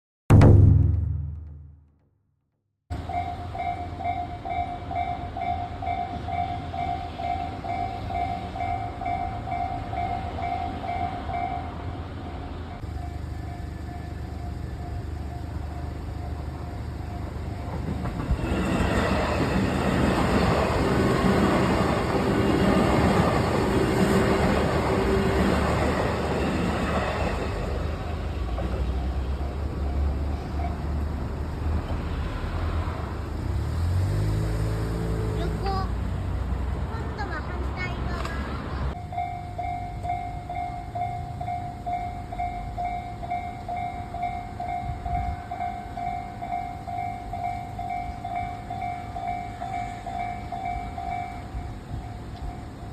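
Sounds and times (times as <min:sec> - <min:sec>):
level crossing alarm bell ringing: 0:02.9 - 0:28.1, 0:39.0 - 0:52.9
train wheels rumbling on track: 0:02.9 - 0:52.9.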